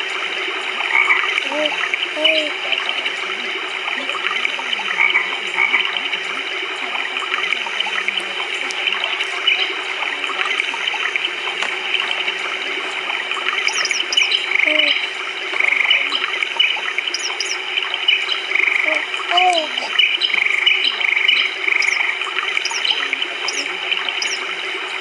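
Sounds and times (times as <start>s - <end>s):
background hiss and hum: 0.0s - 25.0s
pet bird chirping: 13.6s - 15.0s, 15.6s - 24.5s.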